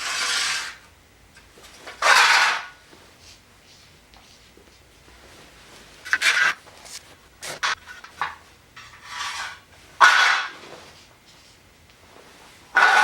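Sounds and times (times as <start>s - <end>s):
scraping and rubbing on wood: 0.0s - 0.8s, 1.9s - 2.8s, 6.0s - 10.8s, 12.7s - 13.0s.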